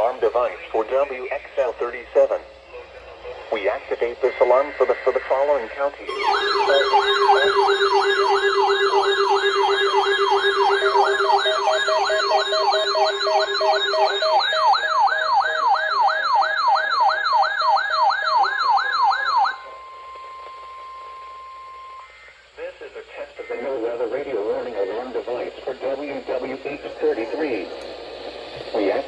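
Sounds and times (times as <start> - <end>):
steady alarm tone: 3.5 - 22.2
beeping tone: 6.1 - 17.3
wailing alarm tone: 6.1 - 22.2.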